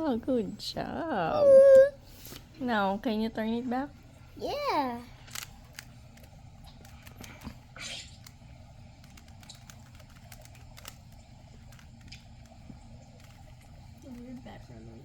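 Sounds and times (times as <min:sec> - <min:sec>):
plastic puzzle cube clicking: 0:05.3 - 0:08.4, 0:09.0 - 0:12.5, 0:13.2 - 0:14.4.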